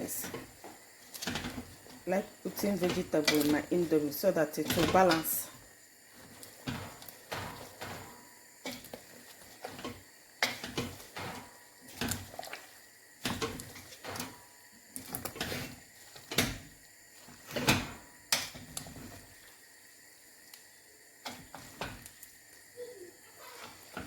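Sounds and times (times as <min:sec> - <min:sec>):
kitchen utensils knocking and clattering: 0:02.6 - 0:05.5.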